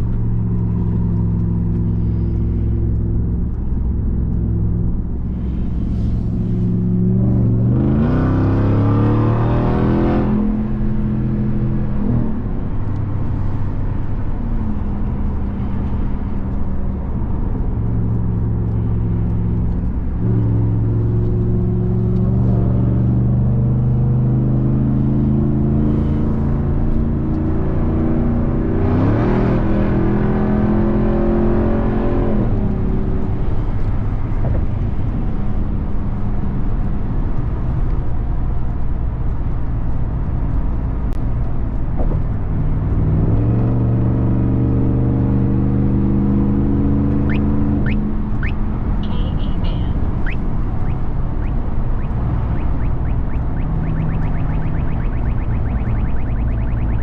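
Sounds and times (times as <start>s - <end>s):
truck engine running: 46.7s - 57.0s.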